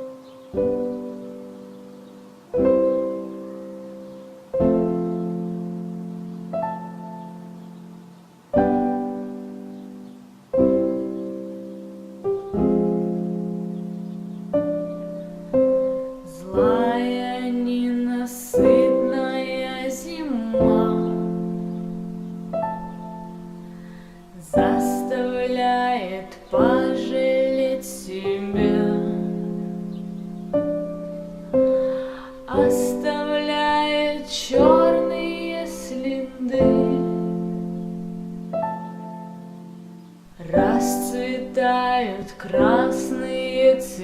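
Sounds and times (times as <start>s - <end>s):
slow piano chords: 0.0s - 44.0s
person singing: 16.2s - 22.0s, 23.7s - 30.0s, 31.5s - 37.8s, 40.4s - 44.0s.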